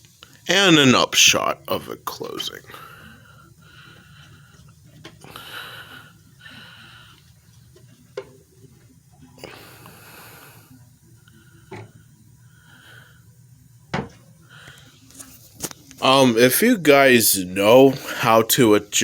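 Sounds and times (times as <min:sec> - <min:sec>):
soft hissing: 0:01.3 - 0:16.0.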